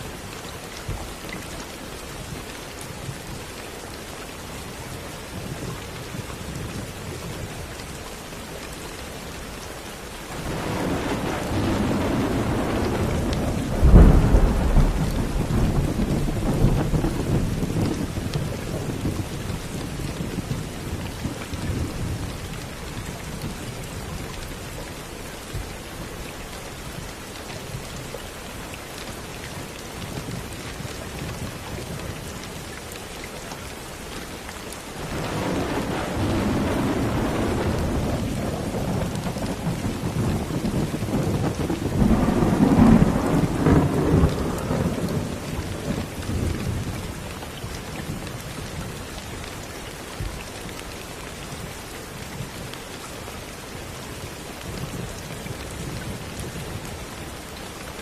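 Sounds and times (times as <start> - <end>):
rain falling: 0.0 - 58.0
distant thunder rolls: 10.3 - 19.3, 35.0 - 46.2.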